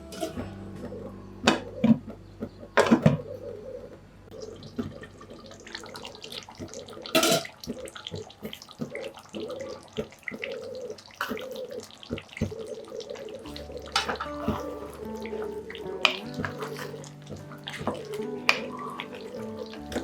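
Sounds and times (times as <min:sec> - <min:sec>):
kitchen utensils clanking: 0:00.0 - 0:02.0, 0:07.1 - 0:07.6, 0:13.6 - 0:20.0
water running and splashing: 0:04.5 - 0:20.0.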